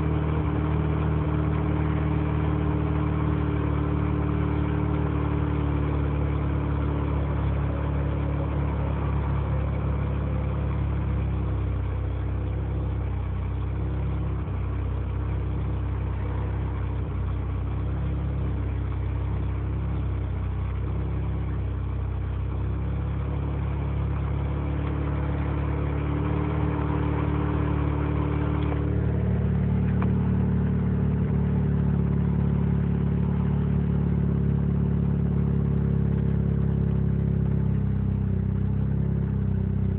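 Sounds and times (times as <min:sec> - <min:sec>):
rotary engine rough idle: 0:00.0 - 0:39.9.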